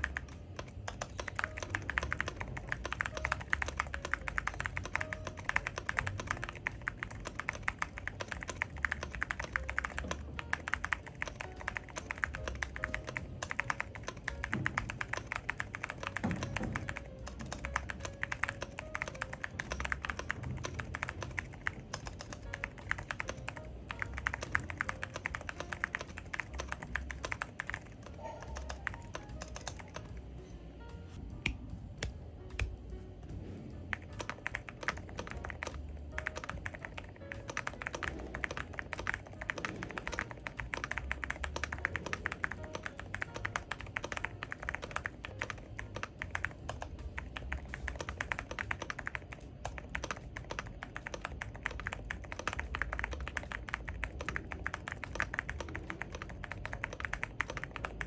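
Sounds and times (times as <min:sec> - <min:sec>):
fast mechanical keyboard typing: 0:00.0 - 0:30.2, 0:33.8 - 0:58.0.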